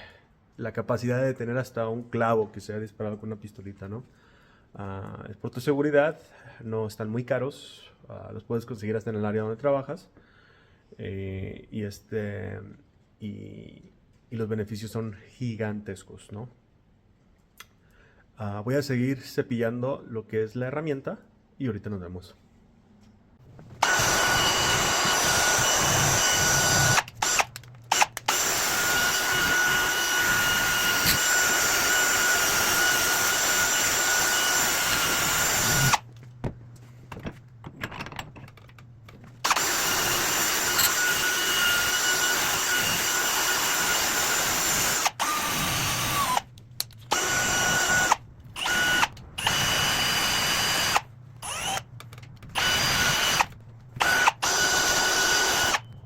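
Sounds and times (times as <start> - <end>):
electric drill whining: 23.8 - 36.1, 39.4 - 56.0.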